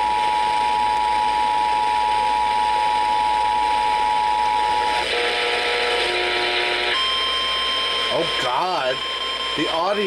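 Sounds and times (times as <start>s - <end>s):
two-tone alarm: 0.0s - 10.0s
broadcast hiss: 4.2s - 10.0s.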